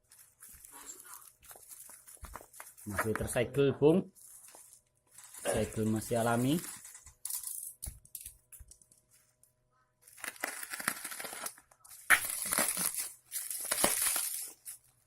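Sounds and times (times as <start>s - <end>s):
packaging being torn and crumpled: 0.1s - 3.3s, 10.0s - 15.0s.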